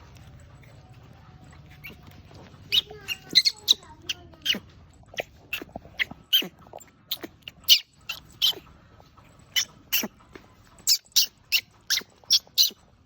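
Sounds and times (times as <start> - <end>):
baby monkey squeaky calls: 1.7 - 2.0, 2.6 - 8.7, 9.5 - 10.2, 10.8 - 12.9.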